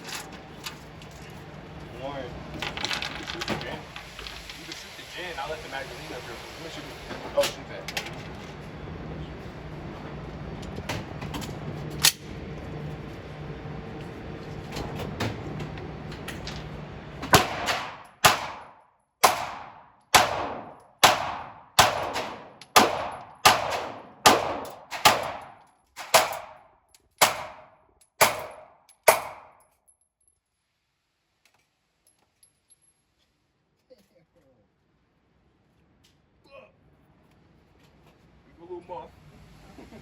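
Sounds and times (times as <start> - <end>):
gunshots: 17.3 - 26.6, 27.2 - 29.5.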